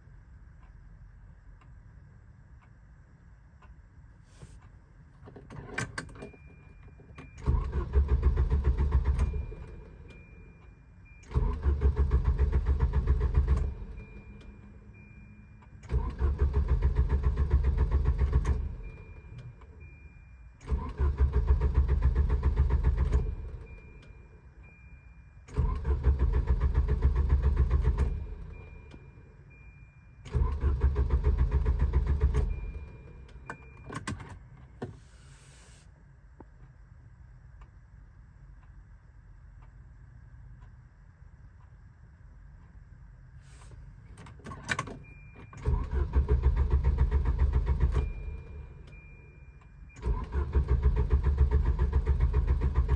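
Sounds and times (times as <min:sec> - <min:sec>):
car engine cranking: 0:07.2 - 0:09.7, 0:11.2 - 0:14.0, 0:15.9 - 0:19.0, 0:20.6 - 0:23.7, 0:25.5 - 0:28.6, 0:30.3 - 0:34.4, 0:44.2 - 0:49.0, 0:49.9 - 0:52.9.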